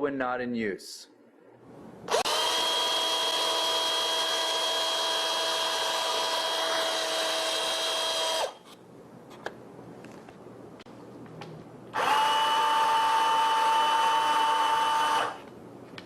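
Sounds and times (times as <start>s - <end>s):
electric cable cutter motor whining: 2.1s - 8.6s, 11.9s - 15.5s.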